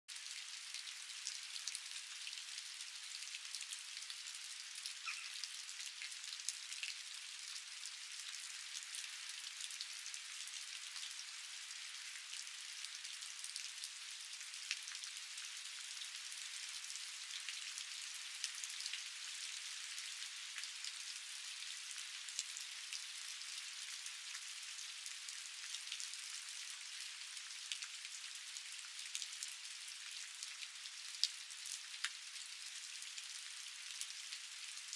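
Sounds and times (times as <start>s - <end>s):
raindrops ticking on surfaces: 0.1s - 34.9s
steady rain hiss: 0.1s - 34.9s.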